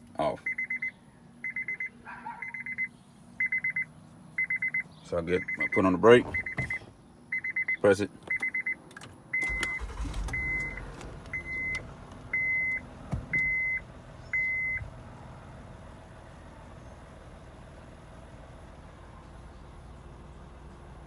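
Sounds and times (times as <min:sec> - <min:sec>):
car engine starting and idling: 0:08.9 - 0:21.0
dashboard chime beeping: 0:12.4 - 0:13.8.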